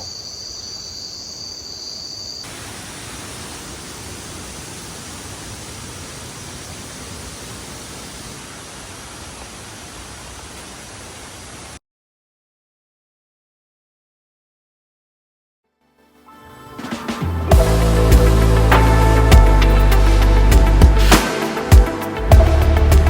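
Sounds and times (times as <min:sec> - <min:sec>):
waterfall rushing: 0:02.5 - 0:11.8.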